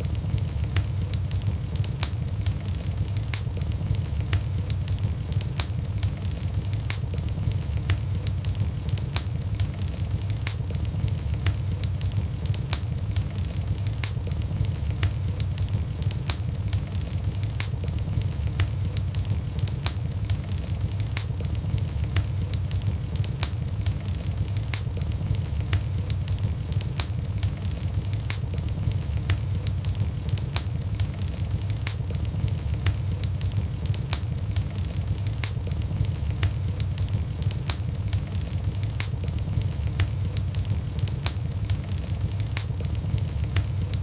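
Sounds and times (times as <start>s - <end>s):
fire crackling and popping: 0.0s - 44.0s
low rumble of flames: 0.0s - 44.0s.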